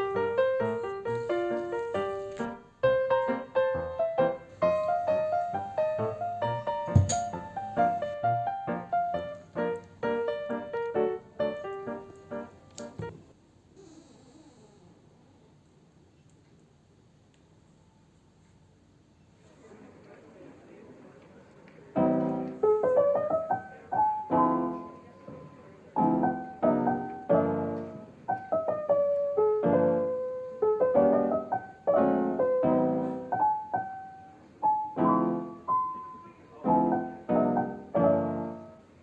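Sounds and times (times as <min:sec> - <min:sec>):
gentle piano music: 0:00.0 - 0:13.2, 0:21.9 - 0:39.0.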